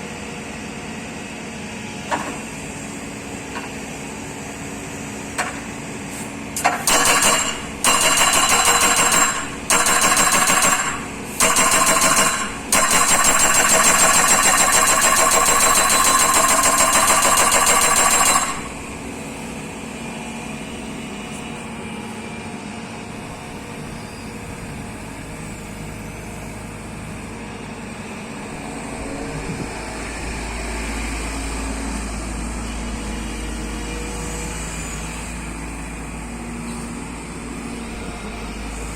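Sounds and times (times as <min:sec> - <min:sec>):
hydraulic breaker hammering: 0:06.6 - 0:19.2.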